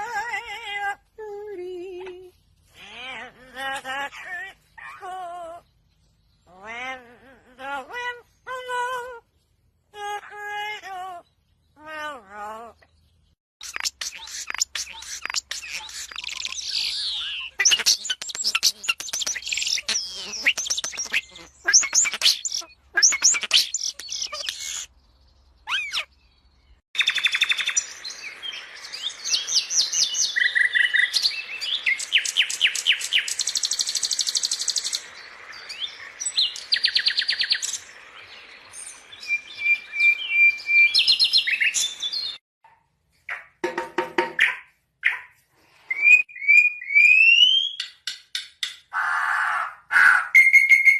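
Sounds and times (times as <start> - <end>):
songbirds chirping and trilling: 2.0 - 42.4.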